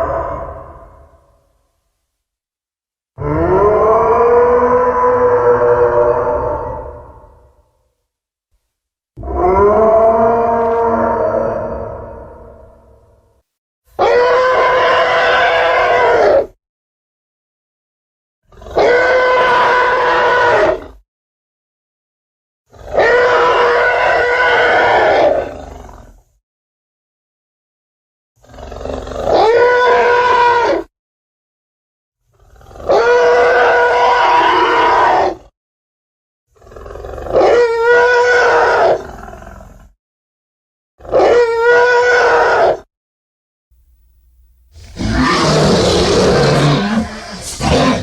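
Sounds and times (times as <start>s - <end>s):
dinosaur roar: 0.0s - 1.4s, 3.2s - 7.6s, 9.2s - 13.0s, 18.5s - 21.0s, 44.7s - 48.0s.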